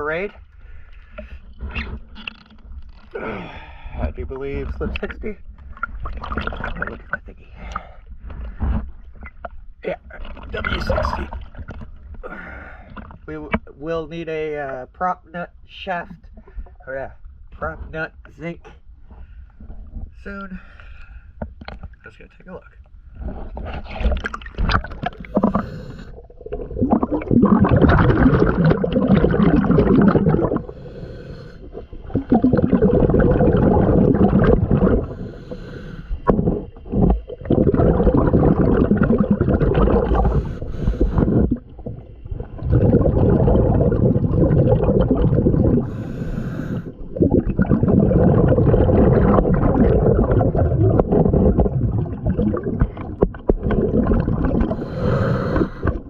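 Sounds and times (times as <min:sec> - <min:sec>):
bubbling regulator exhalations: 0:03.1 - 0:13.2, 0:23.2 - 0:56.0
hissing regulator inhalation: 0:25.2 - 0:26.2, 0:30.4 - 0:33.0, 0:34.7 - 0:37.1, 0:39.9 - 0:41.6, 0:45.8 - 0:47.0, 0:54.7 - 0:56.0.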